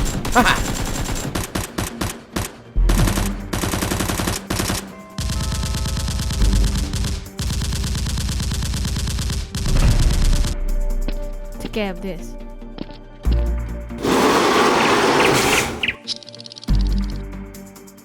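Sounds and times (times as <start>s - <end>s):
rapid automatic gunfire: 0.0s - 10.4s.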